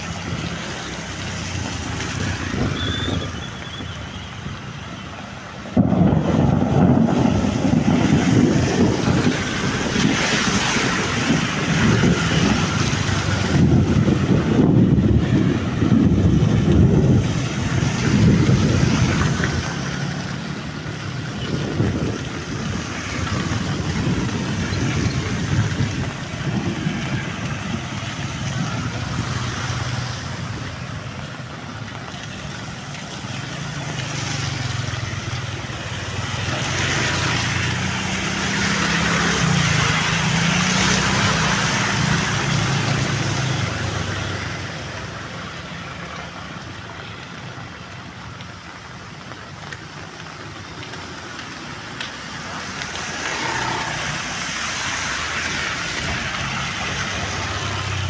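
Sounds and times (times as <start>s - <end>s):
heavy rain falling: 0.0s - 58.0s
wind buffeting microphone: 0.0s - 58.0s.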